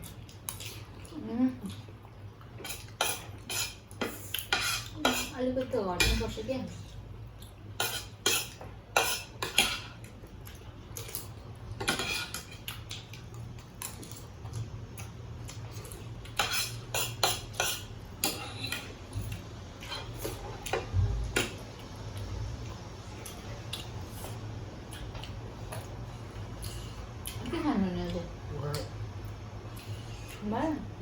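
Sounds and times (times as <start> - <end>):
low steady hum: 0.0 - 31.0
cutlery clinking on plates: 11.8 - 12.6.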